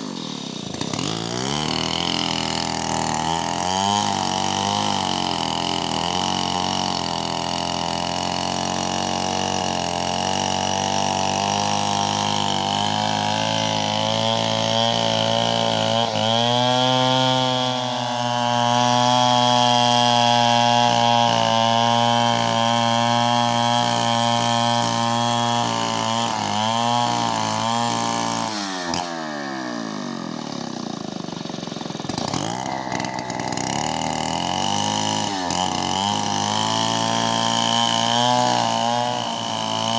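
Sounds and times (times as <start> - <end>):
chainsaw cutting a log: 0.0 - 39.9.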